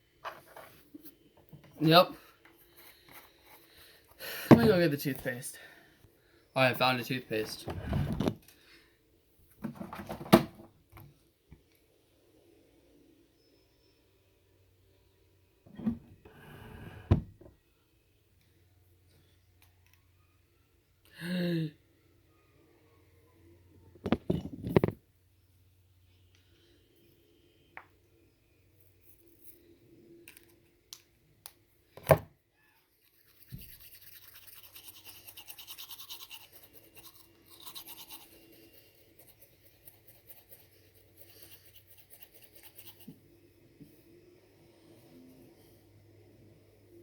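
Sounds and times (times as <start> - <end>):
toothbrush scrubbing teeth: 32.8 - 43.2.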